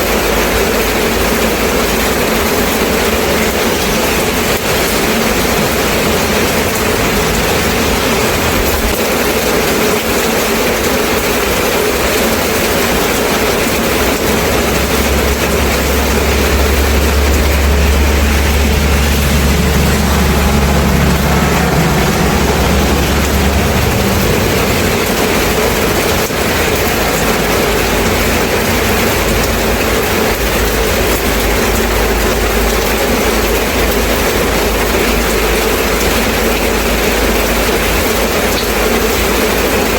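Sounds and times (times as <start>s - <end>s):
steady rain falling: 0.0s - 39.9s
deep low rumble: 12.0s - 34.9s.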